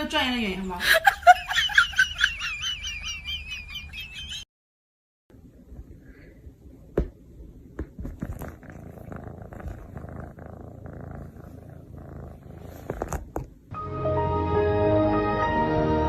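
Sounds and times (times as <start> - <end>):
cat purring: 7.5 - 13.7.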